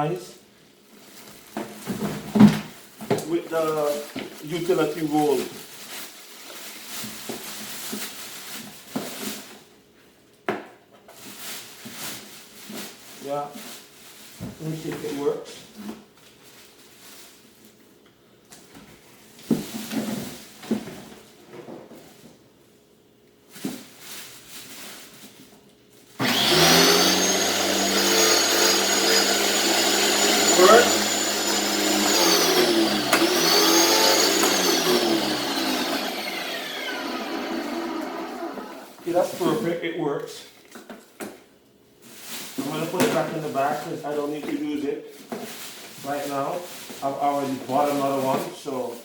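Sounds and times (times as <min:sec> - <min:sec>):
pressure washer motor humming: 0:26.2 - 0:39.0.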